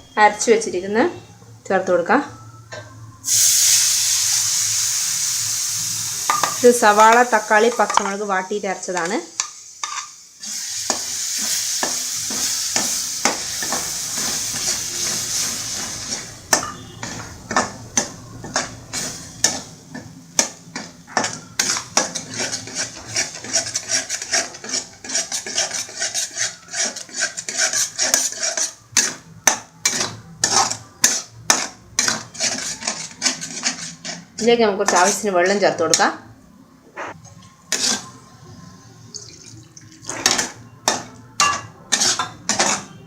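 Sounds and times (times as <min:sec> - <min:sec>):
paste sizzling in hot oil: 0:03.2 - 0:34.4
spoon scraping a pan: 0:06.2 - 0:08.2, 0:08.9 - 0:36.0, 0:37.2 - 0:38.8, 0:40.0 - 0:43.0.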